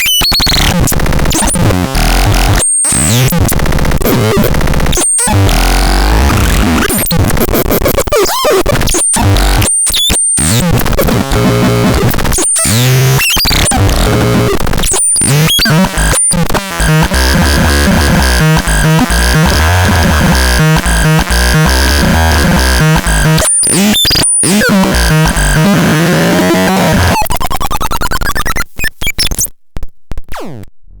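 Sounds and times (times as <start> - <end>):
harsh synthesizer pitch glides: 11.0 - 29.2
pulsing low synth bass: 16.8 - 23.4, 24.4 - 27.2.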